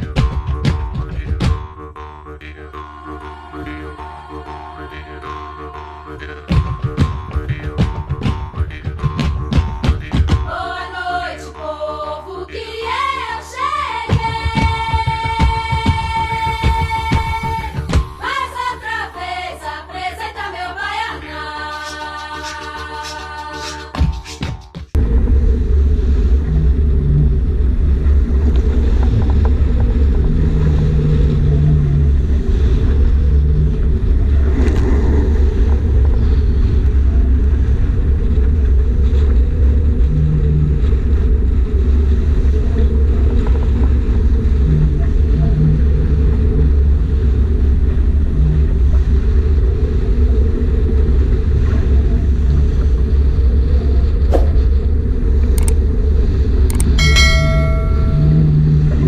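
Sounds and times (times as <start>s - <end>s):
faint low hum: 25.0s - 59.0s
wind buffeting microphone: 25.0s - 59.0s.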